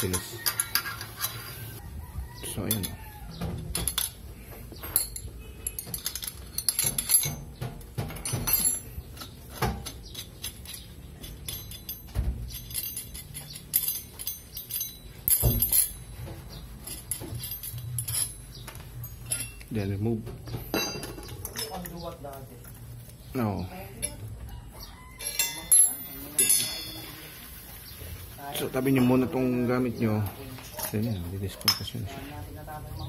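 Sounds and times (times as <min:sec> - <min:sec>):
metal parts clinking and knocking: 0:00.0 - 0:01.7, 0:02.4 - 0:22.8, 0:24.9 - 0:27.0.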